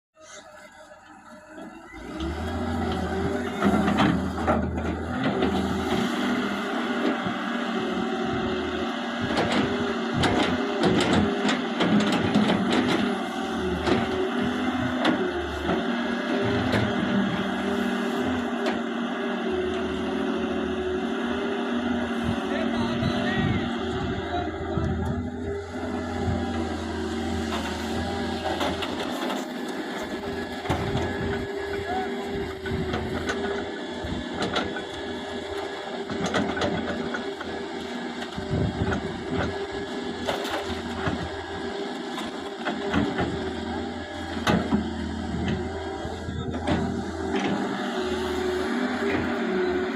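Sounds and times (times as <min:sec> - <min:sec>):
diesel construction machinery running: 0:00.2 - 0:49.9
knocks and clanks: 0:09.3 - 0:13.0.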